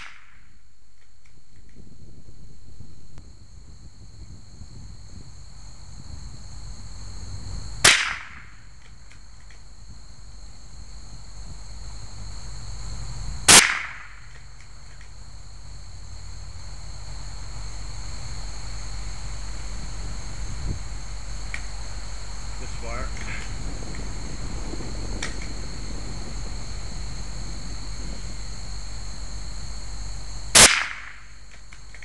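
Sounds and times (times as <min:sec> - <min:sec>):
insects droning: 0:00.0 - 0:32.0
rifle shots: 0:07.8 - 0:08.4, 0:13.5 - 0:14.2, 0:30.6 - 0:31.2.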